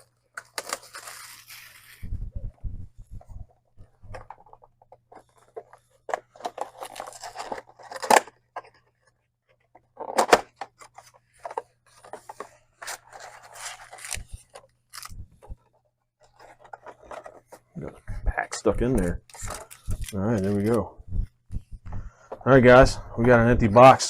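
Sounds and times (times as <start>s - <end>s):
cardboard and foil rustling: 0.0s - 2.1s, 6.3s - 8.3s, 11.0s - 15.1s.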